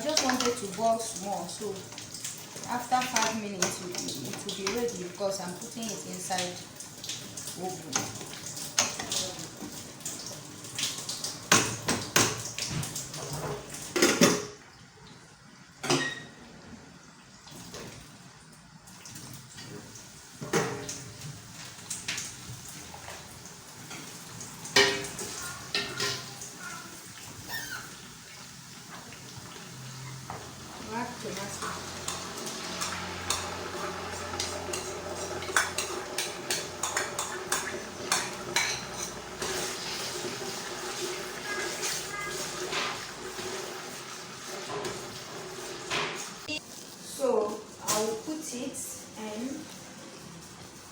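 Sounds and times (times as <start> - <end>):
pots and dishes clattering: 0.0 - 1.2, 7.9 - 14.6, 15.8 - 16.4, 19.5 - 46.5
metal utensils clinking on pots: 0.0 - 6.7, 7.6 - 10.2, 15.8 - 16.4, 24.7 - 26.4, 30.1 - 43.9.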